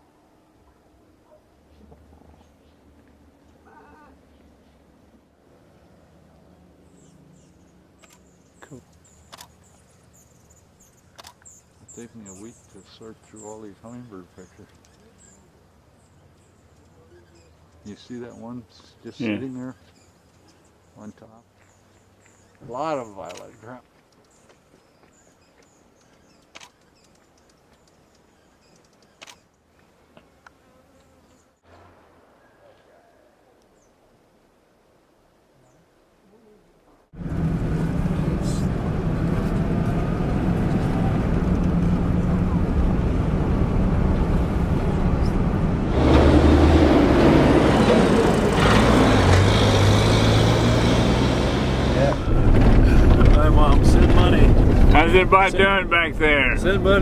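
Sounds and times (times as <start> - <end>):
faint outdoor background: 0.0 - 57.0
road noise: 4.4 - 28.5, 37.1 - 57.0
sharp clicks: 8.0 - 9.7, 11.1 - 11.6, 23.2 - 24.4, 26.0 - 29.5
small high chips and ticks: 25.5 - 30.6
vehicle engine running: 37.2 - 57.0.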